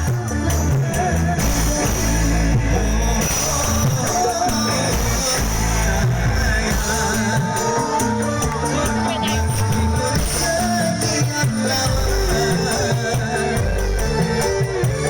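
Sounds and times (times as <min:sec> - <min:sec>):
live band music with heavy bass: 0:00.0 - 0:15.0.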